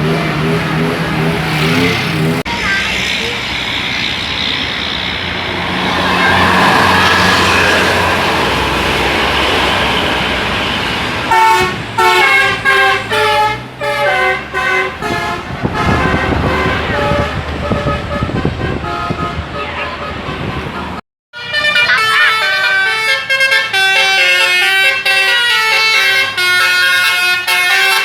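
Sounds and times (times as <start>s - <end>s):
bus engine: 0.0s - 28.0s
road noise: 0.0s - 28.0s
multi-note bus air horn: 11.3s - 28.0s.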